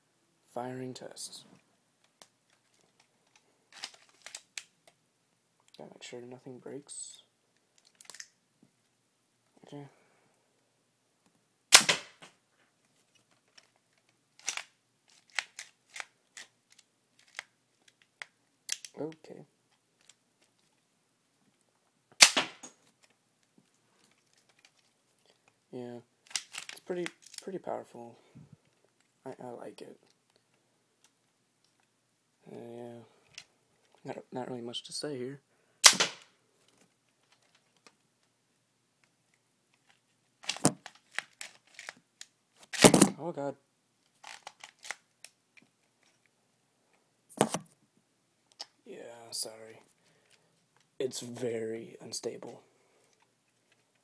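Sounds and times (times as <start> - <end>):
plastic clicks of gun handling: 2.0 - 5.0, 7.8 - 8.4, 13.1 - 19.2, 20.0 - 20.8, 26.2 - 27.5, 39.7 - 43.1, 44.0 - 46.3, 48.5 - 48.8
rubber band gun snap: 11.8 - 12.4, 22.2 - 22.7, 35.8 - 36.3
toy gun firing snap: 35.8 - 36.2.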